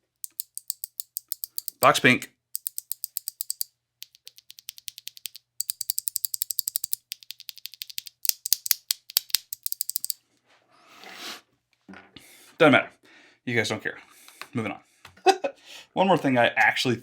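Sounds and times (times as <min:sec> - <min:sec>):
clicky keyboard typing: 0:00.1 - 0:02.0, 0:02.6 - 0:10.2.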